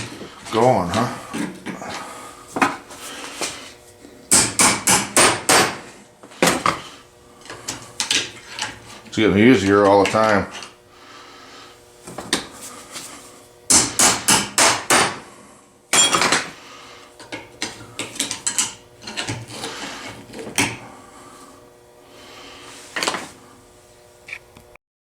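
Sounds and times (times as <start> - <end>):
hammer striking metal pliers: 15.9 - 16.4.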